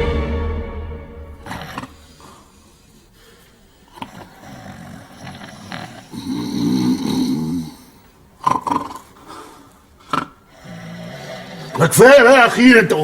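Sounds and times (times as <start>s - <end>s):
sharp snorts: 1.4s - 11.8s
men snoring: 3.8s - 11.8s.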